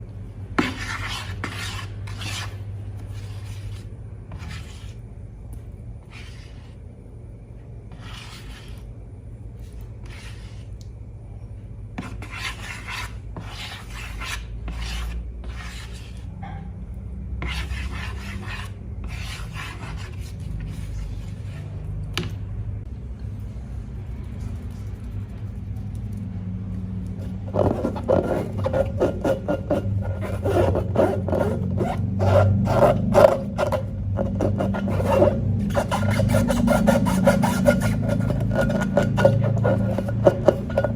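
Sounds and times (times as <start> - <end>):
steady low hum: 0.0 - 40.9
rasping scrape strokes: 0.6 - 5.0, 6.0 - 6.8, 7.9 - 8.9, 9.6 - 10.7, 12.0 - 16.3, 17.4 - 21.8, 27.2 - 40.9.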